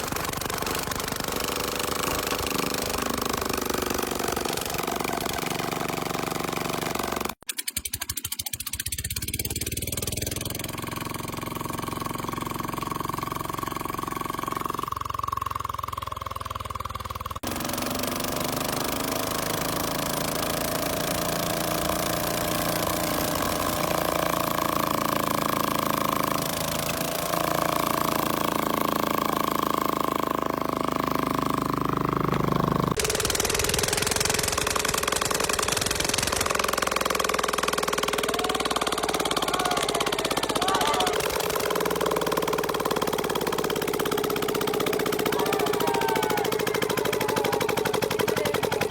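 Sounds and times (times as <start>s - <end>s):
generator engine chugging: 0.0s - 48.9s
steady engine whine: 17.5s - 48.9s.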